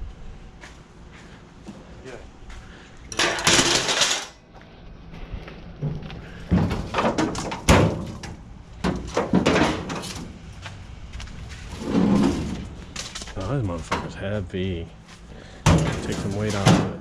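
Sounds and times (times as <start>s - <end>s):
knocks and thumps: 5.8s - 10.2s
grill scraping: 11.4s - 13.9s.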